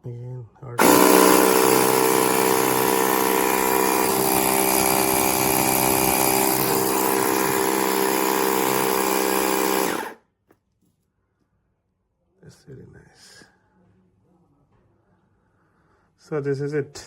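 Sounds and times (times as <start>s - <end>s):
electric air compressor humming: 0.8s - 10.2s.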